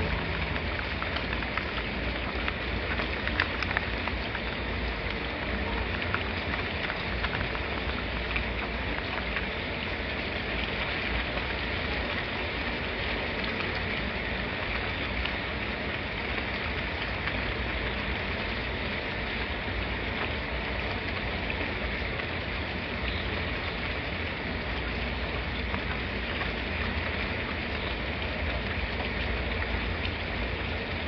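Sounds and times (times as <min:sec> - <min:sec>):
drops ticking on a surface: 0:00.0 - 0:11.6
constant low rumble: 0:00.0 - 0:31.0
steady rainfall: 0:00.0 - 0:31.0.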